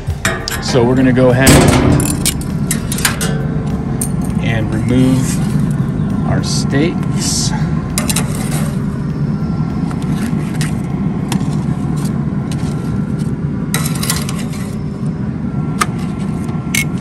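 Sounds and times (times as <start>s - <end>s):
steady low rumble: 0.0s - 17.0s
metal clicks and scrapes on grill grate: 8.0s - 8.9s, 10.0s - 14.8s.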